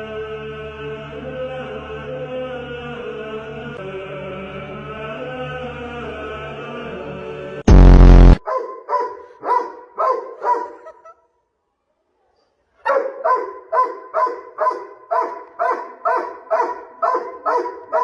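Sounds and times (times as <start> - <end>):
loud short buzz: 7.7 - 8.4
dog barking: 8.4 - 11.1, 12.8 - 18.0.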